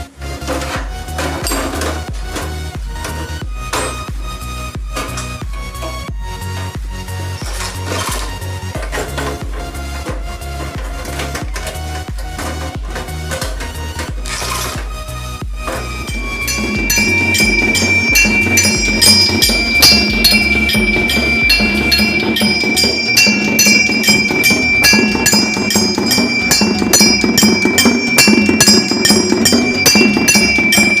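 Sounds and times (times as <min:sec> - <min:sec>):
drum beats: 0:00.7 - 0:31.0
bell struck rapidly: 0:15.9 - 0:31.0.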